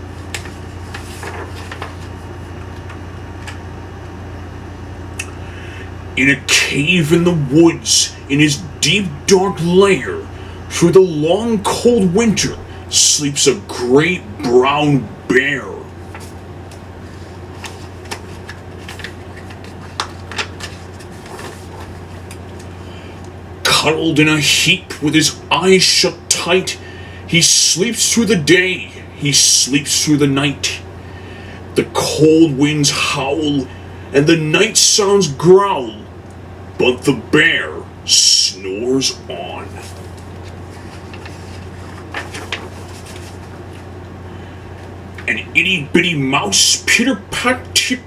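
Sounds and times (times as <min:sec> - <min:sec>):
steady low hum: 0:00.0 - 0:48.0
paper page rustling: 0:00.2 - 0:03.6, 0:16.0 - 0:22.7, 0:39.7 - 0:43.9.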